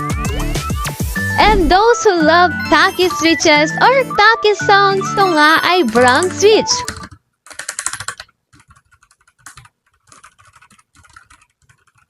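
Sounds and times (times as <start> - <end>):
mechanical keyboard typing: 5.8 - 12.0.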